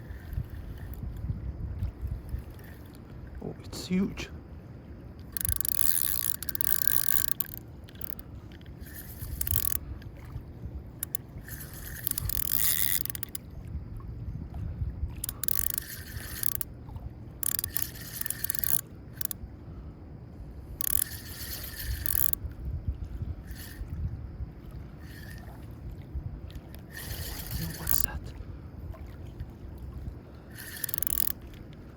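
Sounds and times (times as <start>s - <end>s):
fishing reel whirring: 0.0s - 1.1s, 2.3s - 2.9s, 5.2s - 9.9s, 10.9s - 13.4s, 15.2s - 16.7s, 17.3s - 19.4s, 20.7s - 22.4s, 23.4s - 24.0s, 25.0s - 25.6s, 26.6s - 28.2s, 30.4s - 31.5s
low rumble of moving water: 0.0s - 31.9s.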